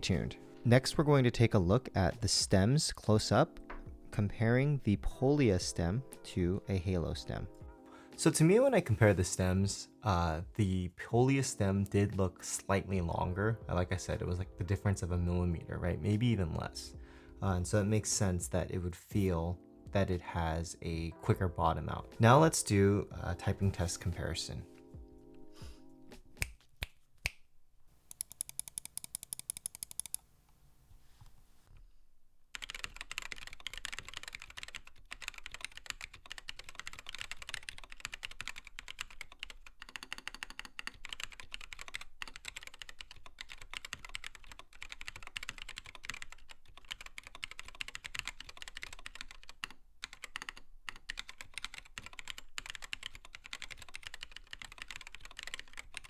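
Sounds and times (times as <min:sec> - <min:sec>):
fast typing on mechanical keyboard: 0:28.1 - 0:30.2, 0:32.6 - 0:56.0.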